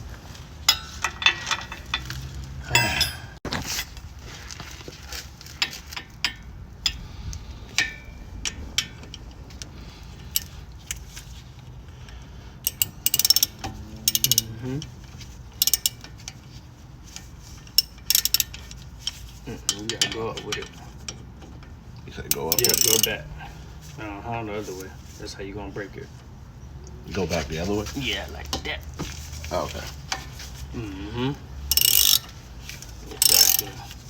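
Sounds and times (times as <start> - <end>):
metal tools clinking: 0.6 - 3.9, 10.2 - 11.4, 12.6 - 21.2, 22.3 - 23.4, 31.6 - 34.0
socket ratchet clicking: 10.3 - 11.0, 12.6 - 14.5, 15.6 - 16.0, 17.8 - 18.6, 22.3 - 23.2, 31.7 - 32.3, 33.2 - 33.8.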